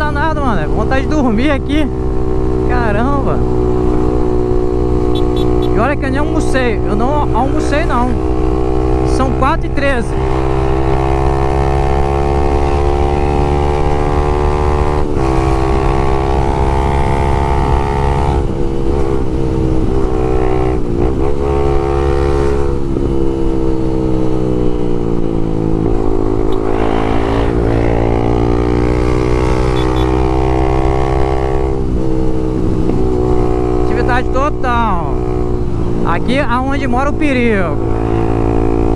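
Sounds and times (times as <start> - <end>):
motorcycle engine cruising: 0.0 - 38.9
wind on microphone: 13.0 - 21.3.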